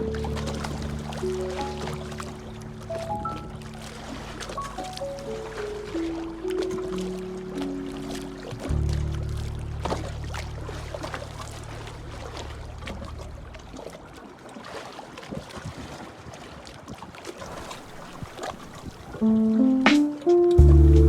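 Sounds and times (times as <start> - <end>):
low musical drone: 0.0 - 4.1, 5.2 - 12.3, 19.2 - 21.0
small water splashes: 0.0 - 20.7
river water lapping and trickling: 0.0 - 21.0
music notes: 4.6 - 9.3, 19.2 - 21.0.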